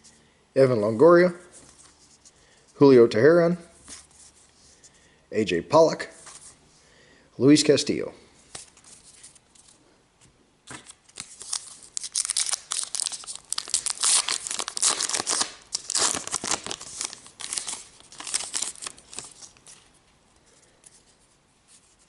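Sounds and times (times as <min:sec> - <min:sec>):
wrapper tearing and crinkling: 0:10.8 - 0:19.8.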